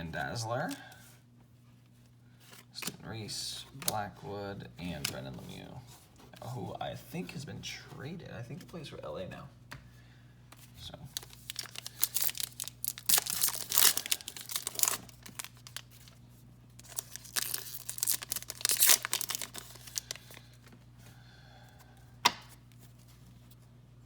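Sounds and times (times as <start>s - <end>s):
wrapper tearing and crinkling: 11.1s - 16.2s, 16.8s - 20.5s.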